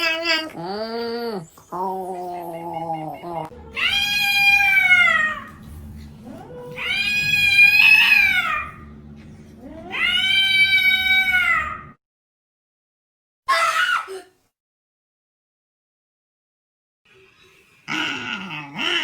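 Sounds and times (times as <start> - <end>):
cat yowling: 2.8 - 5.6, 6.8 - 8.8, 9.9 - 12.0.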